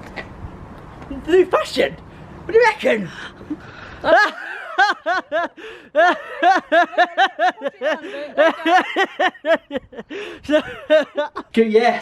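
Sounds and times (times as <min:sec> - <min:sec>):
high-pitched laughter: 0:04.0 - 0:11.5.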